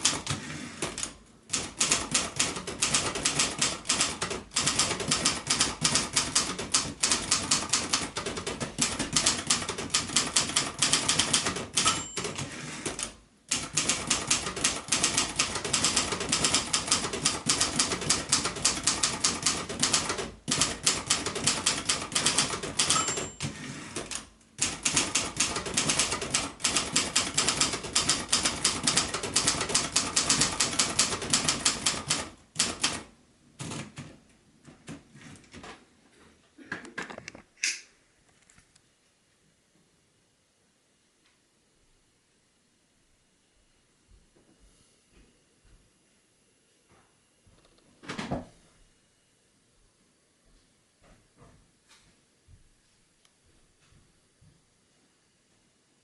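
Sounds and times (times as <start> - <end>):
typewriter keystrokes: 0.0 - 34.2
typewriter bell ring: 10.4 - 12.7, 21.3 - 23.7.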